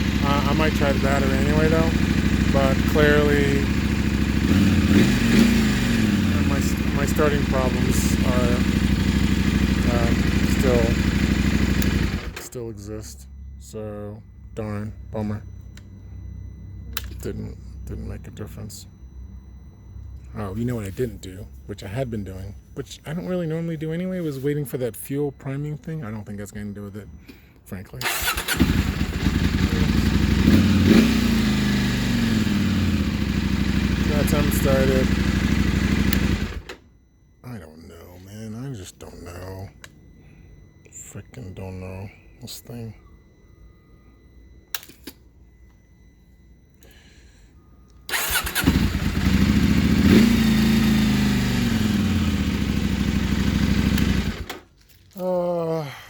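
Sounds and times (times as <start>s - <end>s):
motorcycle engine revving and idling: 0.0s - 12.4s, 28.0s - 36.7s, 48.1s - 54.6s
electric starter cranking: 3.8s - 12.4s, 28.0s - 36.8s, 48.1s - 54.9s.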